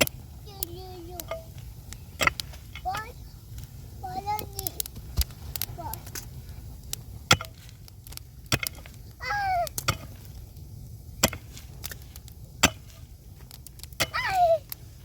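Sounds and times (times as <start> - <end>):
axe chopping wood: 12.6 - 13.0.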